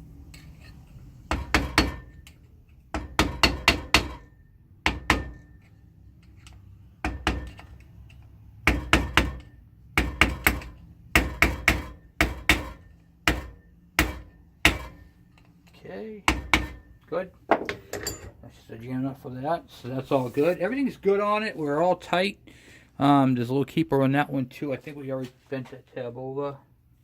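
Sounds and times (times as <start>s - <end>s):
hammer tapping on metal: 1.3s - 5.6s, 7.0s - 15.0s, 16.3s - 16.9s.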